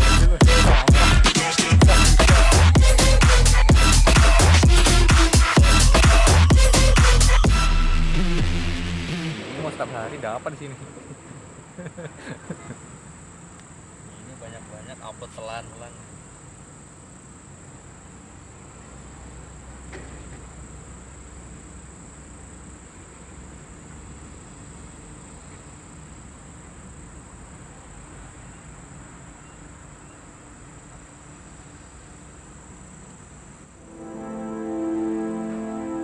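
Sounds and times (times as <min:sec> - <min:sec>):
music with steady chord: 0:00.0 - 0:10.2, 0:33.8 - 0:36.0
insects droning: 0:00.0 - 0:36.0.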